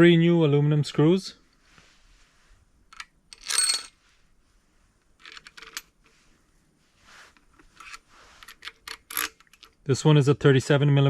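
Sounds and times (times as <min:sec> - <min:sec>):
bolts rustling and clicking: 0:02.9 - 0:04.0, 0:05.0 - 0:06.2, 0:07.3 - 0:09.9.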